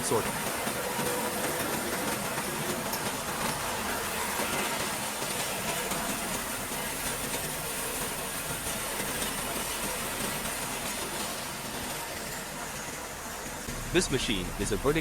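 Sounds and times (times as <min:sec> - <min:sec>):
industrial crusher running: 0:13.5 - 0:15.0.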